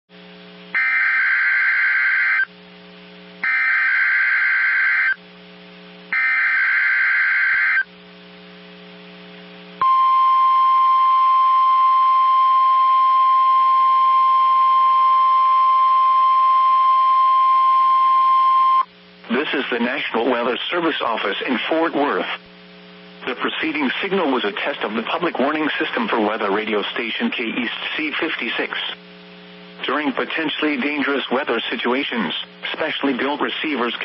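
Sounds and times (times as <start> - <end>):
steady warning alarm tone: 0.8 - 2.5, 3.4 - 5.2, 6.1 - 7.9
warbling data tone bursts: 3.4 - 5.2.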